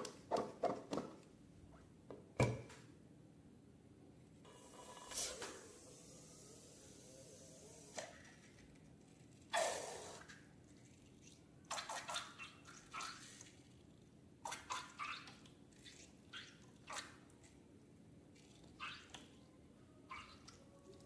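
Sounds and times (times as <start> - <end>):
wet slime squelches and drips: 11.0 - 13.6, 14.4 - 17.6, 18.3 - 19.5, 20.1 - 21.0.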